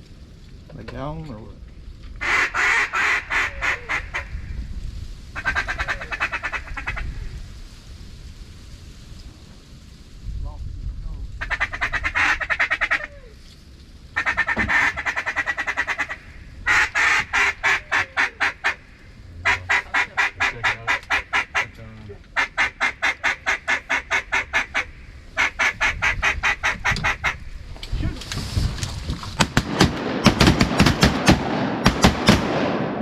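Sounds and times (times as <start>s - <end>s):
duck call quacks: 2.2s - 4.3s, 5.4s - 7.1s, 11.4s - 13.2s, 14.2s - 18.8s, 19.4s - 21.8s, 22.4s - 27.4s.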